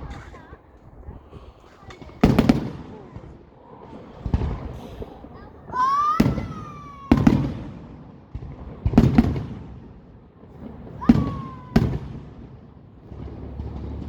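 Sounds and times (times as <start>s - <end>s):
firework bangs: 0.0s - 14.0s
whistling rockets: 1.3s - 14.0s.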